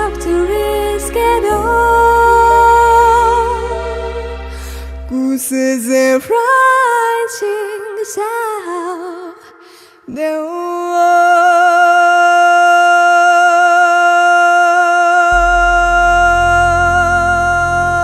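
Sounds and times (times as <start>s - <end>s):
low bass notes: 0.0s - 5.4s, 15.3s - 18.0s
quiet backing track: 15.3s - 18.0s.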